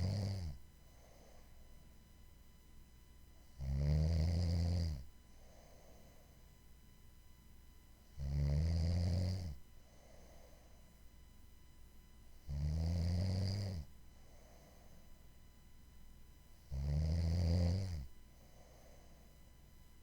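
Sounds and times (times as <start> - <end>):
loud low buzzing snores: 0.0 - 0.6, 3.5 - 5.1, 8.1 - 9.7, 12.4 - 14.0, 16.6 - 18.9
faint breath: 0.8 - 1.8, 5.3 - 6.6, 9.8 - 11.1, 14.0 - 15.4, 18.2 - 19.6.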